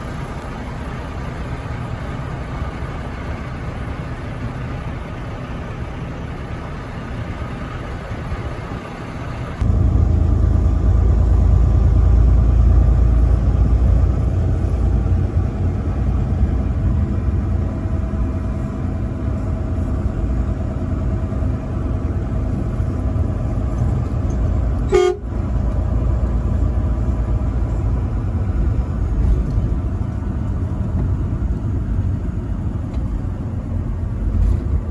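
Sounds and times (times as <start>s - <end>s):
truck engine and road rumble: 0.0s - 34.9s
short horn toot: 24.8s - 25.3s.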